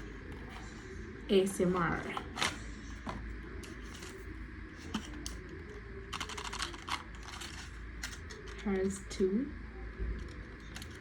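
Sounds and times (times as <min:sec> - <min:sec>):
packaging clicks and crackles: 0:04.8 - 0:08.9, 0:10.2 - 0:11.0.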